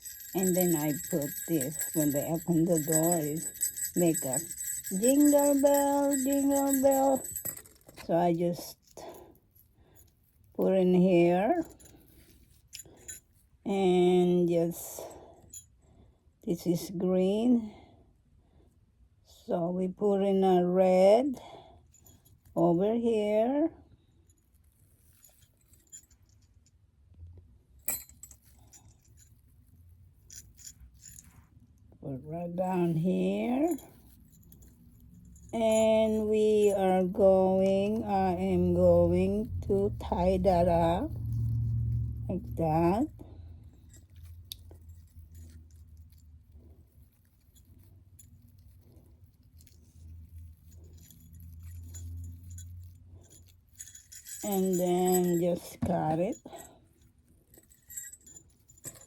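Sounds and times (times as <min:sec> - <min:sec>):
small metal bells tinkling: 0:00.0 - 0:09.2, 0:11.4 - 0:13.4, 0:24.2 - 0:26.7, 0:27.9 - 0:31.5, 0:32.5 - 0:59.0
low steady hum: 0:00.0 - 0:18.7, 0:25.9 - 0:59.0.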